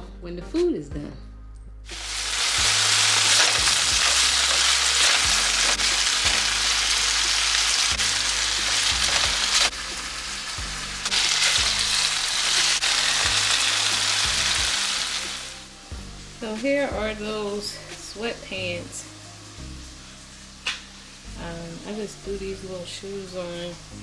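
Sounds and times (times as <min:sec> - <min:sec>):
food sizzling in a frying pan: 0:01.9 - 0:24.0.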